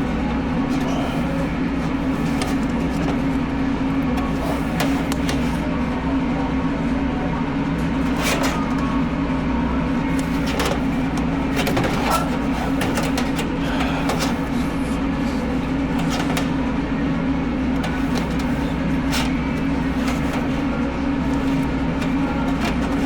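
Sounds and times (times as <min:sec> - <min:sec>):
low machine hum: 0:00.0 - 0:23.0
clicks and knocks: 0:00.7 - 0:05.6, 0:10.1 - 0:16.7, 0:17.4 - 0:23.0.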